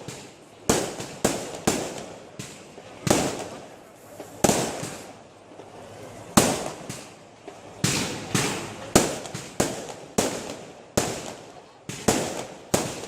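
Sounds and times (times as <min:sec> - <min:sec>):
fireworks bursting with echo: 0:00.0 - 0:05.6, 0:06.2 - 0:13.0.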